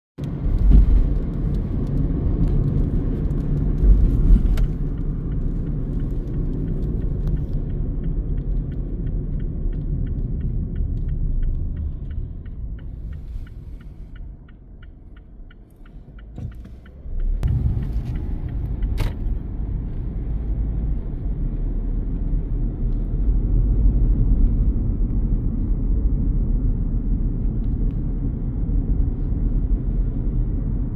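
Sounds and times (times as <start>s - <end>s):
car road and engine rumble: 0.2s - 30.9s
regular ticking: 4.6s - 19.8s.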